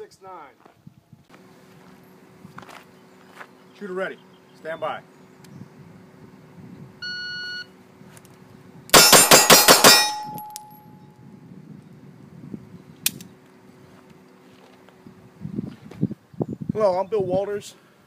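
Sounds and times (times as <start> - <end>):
steel targets clanging: 8.9 - 11.0.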